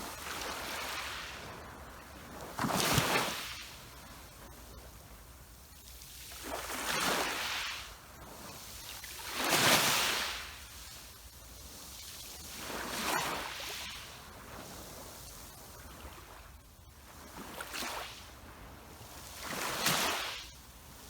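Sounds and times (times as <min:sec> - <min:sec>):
sea waves washing onto shore: 0:06.3 - 0:16.6.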